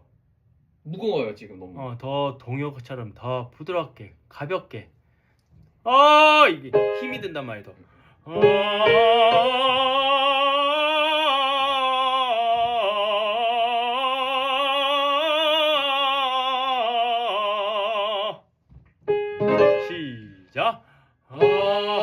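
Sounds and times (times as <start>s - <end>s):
classical singer singing: 8.2s - 18.4s, 21.3s - 22.0s.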